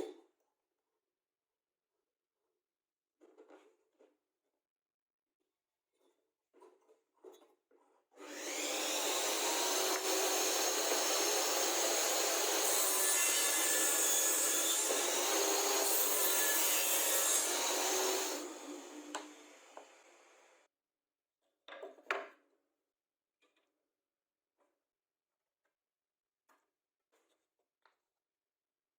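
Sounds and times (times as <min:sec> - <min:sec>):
power tool cutting wood: 0:08.2 - 0:20.7.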